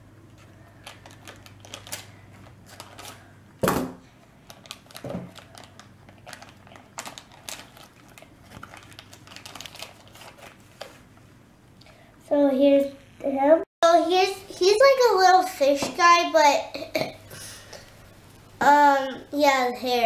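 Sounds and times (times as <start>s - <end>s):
plastic bag and pieces clicking: 0.8s - 3.2s, 4.5s - 10.6s.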